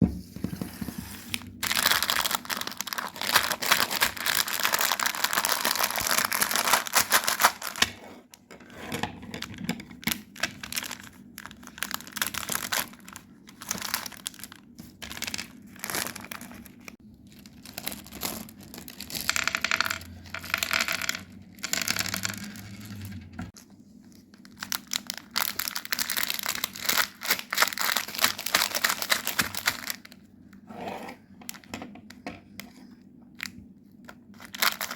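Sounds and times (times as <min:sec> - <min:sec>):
wrappers crinkling and tearing: 0:01.4 - 0:07.9, 0:10.2 - 0:19.9, 0:21.6 - 0:30.2, 0:33.4 - 0:34.9.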